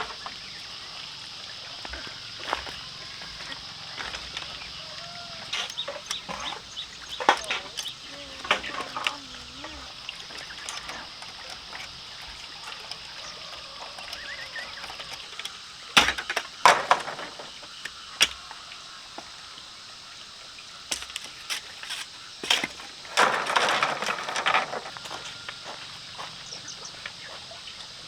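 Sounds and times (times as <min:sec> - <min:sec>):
bamboo cracking and knocking: 0:01.9 - 0:09.3, 0:09.9 - 0:18.6, 0:20.9 - 0:25.5
bamboo splintering crackle: 0:10.2 - 0:18.5.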